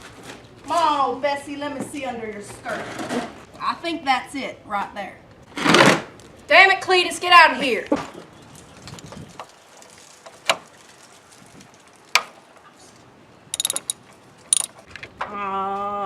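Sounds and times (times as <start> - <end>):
clinks of hand tools: 13.6 - 14.0.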